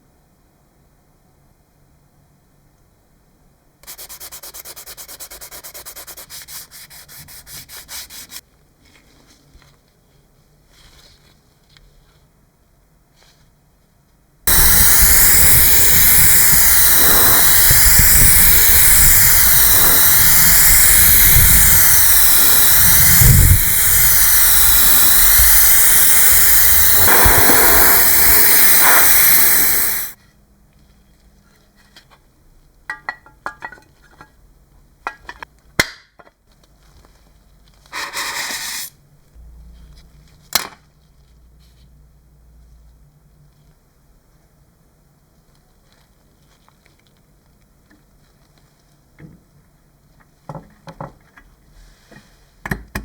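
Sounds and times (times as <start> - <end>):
loud spray hiss: 14.5 - 30.2.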